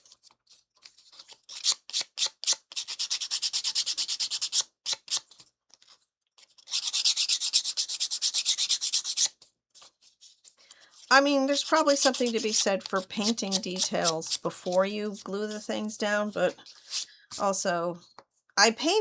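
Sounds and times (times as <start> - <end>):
sanding wood by hand: 6.7 - 9.3, 11.6 - 14.8.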